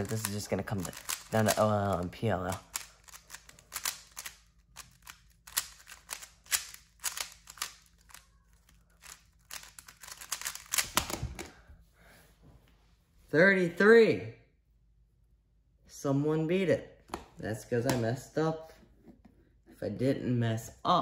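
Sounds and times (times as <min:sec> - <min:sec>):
plastic puzzle cube clicking: 0:00.0 - 0:11.2.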